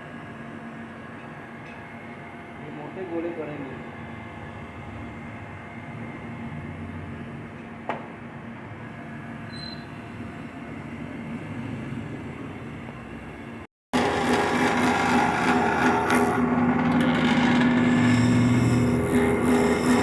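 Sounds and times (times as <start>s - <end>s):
lathe tool cutting wood: 13.9s - 20.0s
lathe motor hum: 14.0s - 20.0s.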